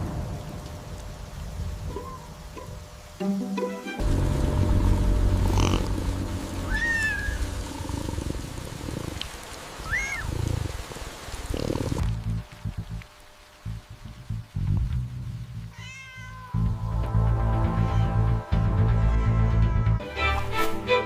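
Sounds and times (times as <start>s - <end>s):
cat purring: 5.4s - 6.2s, 7.3s - 9.4s, 10.1s - 12.1s
cat mewing: 6.7s - 7.5s, 9.8s - 10.3s, 15.7s - 16.6s.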